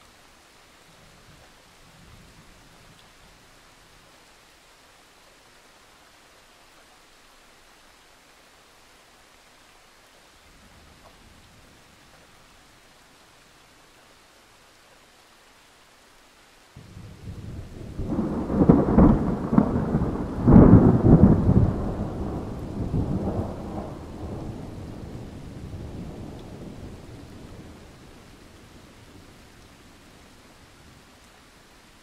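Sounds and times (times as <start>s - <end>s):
faint steady rain: 0.0s - 32.0s
thunder rolling: 16.8s - 27.8s.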